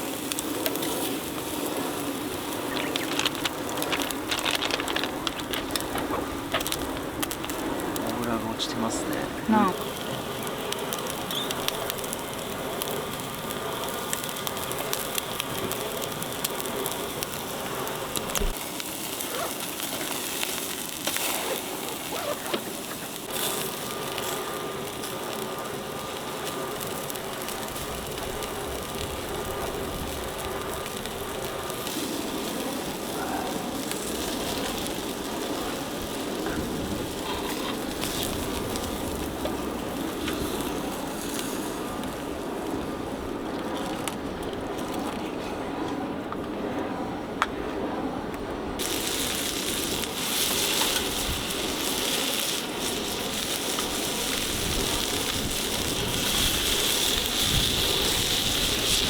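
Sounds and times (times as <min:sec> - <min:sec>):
meat sizzling over embers: 0:00.0 - 0:45.2, 0:48.8 - 0:59.0
fat crackling on coals: 0:00.0 - 0:59.0.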